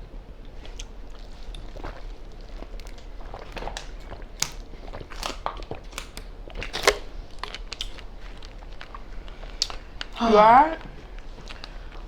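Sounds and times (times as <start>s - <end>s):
crab shells cracking: 0.7s - 10.2s.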